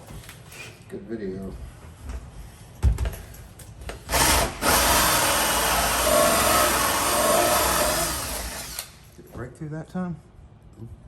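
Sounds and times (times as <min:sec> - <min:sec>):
hole saw cutting wood: 0:04.1 - 0:08.9.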